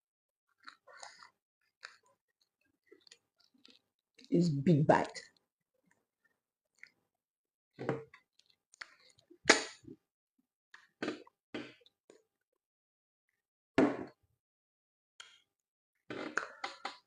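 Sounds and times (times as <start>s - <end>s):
wet mouth smacks and chewing: 0.6s - 2.0s, 2.9s - 3.8s.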